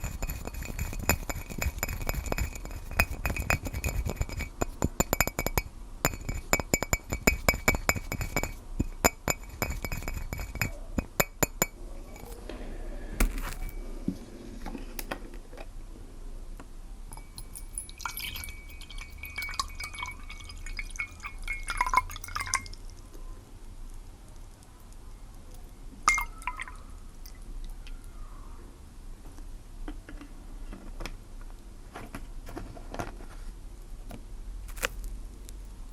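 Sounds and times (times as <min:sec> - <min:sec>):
glass clinking: 0:00.0 - 0:12.4, 0:13.2 - 0:13.9, 0:17.1 - 0:22.8, 0:26.1 - 0:26.8
water dripping and trickling: 0:17.4 - 0:23.1, 0:26.1 - 0:27.8.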